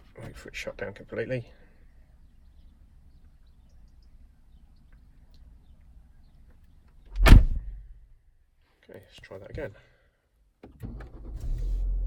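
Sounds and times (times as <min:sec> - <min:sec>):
car door shutting: 0:07.2 - 0:07.7.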